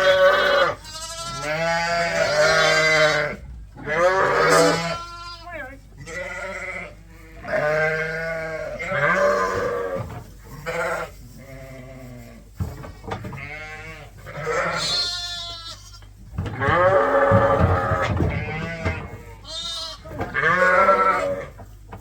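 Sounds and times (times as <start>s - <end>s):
sheep bleating: 0.0s - 10.0s, 10.6s - 12.4s, 13.4s - 21.6s.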